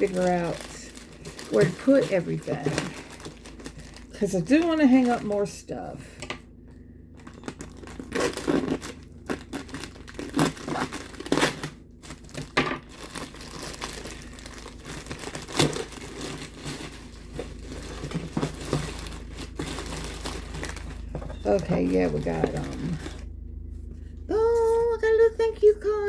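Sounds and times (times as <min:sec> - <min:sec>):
packaging tearing: 0:00.0 - 0:05.4, 0:07.2 - 0:23.3
packaging crinkling and rustling: 0:00.0 - 0:05.7, 0:07.1 - 0:24.0.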